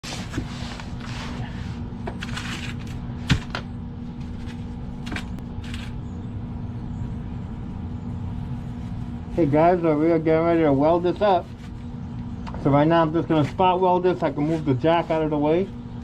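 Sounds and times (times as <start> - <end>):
handling scrapes and rustles: 0.0 - 3.0
steady low hum: 0.0 - 16.0.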